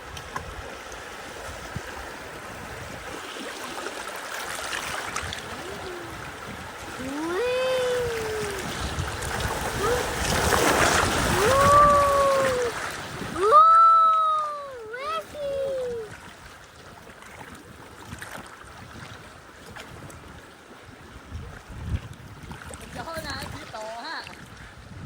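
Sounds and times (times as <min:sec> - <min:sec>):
river water flowing and splashing: 0:00.0 - 0:25.0
person calling out: 0:05.6 - 0:06.2, 0:07.0 - 0:08.8, 0:09.8 - 0:10.2, 0:11.3 - 0:12.8, 0:13.4 - 0:16.1.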